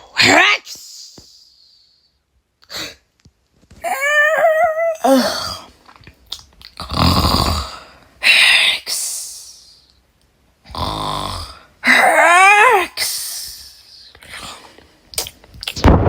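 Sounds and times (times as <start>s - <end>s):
person imitating yawn: 3.8s - 5.7s
person imitating snores: 6.8s - 9.5s, 10.7s - 12.1s.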